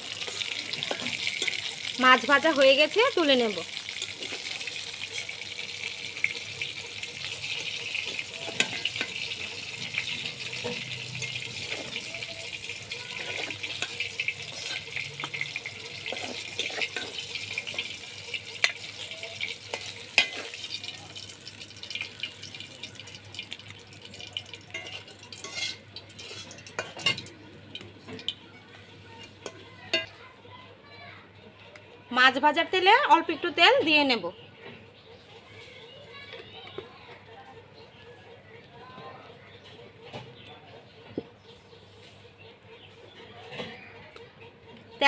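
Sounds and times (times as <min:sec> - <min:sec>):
oil sizzling in a pan: 0:00.0 - 0:30.1.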